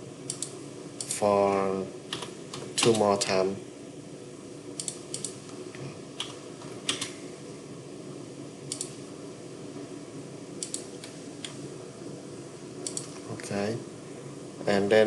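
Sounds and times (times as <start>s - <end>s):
low room hum: 0.0s - 15.0s
keyboard and mouse clicks: 0.3s - 1.2s, 2.1s - 3.0s, 4.8s - 5.4s, 6.2s - 7.2s, 8.7s - 9.0s, 10.6s - 11.6s, 12.8s - 13.2s.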